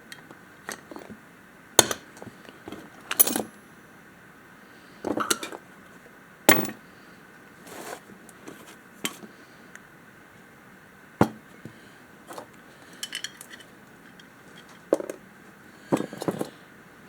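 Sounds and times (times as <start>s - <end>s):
small metal parts clinking: 3.1s - 3.5s, 6.5s - 6.8s.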